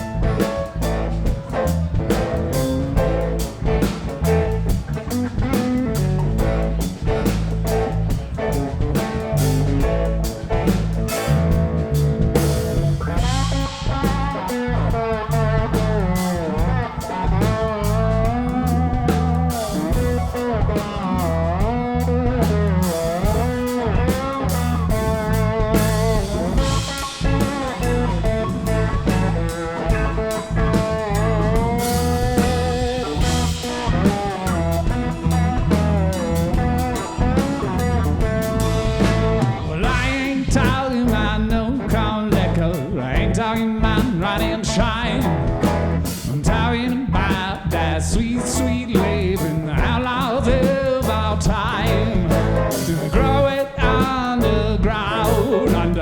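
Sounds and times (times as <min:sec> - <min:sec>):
drums and bass beat: 0:00.0 - 0:56.0
lead guitar melody: 0:00.0 - 0:56.0.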